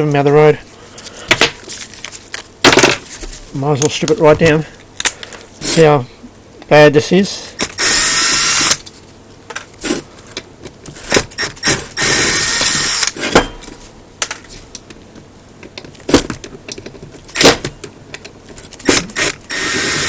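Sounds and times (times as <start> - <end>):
power drill running: 7.7 - 8.8, 11.4 - 13.2, 18.9 - 20.0.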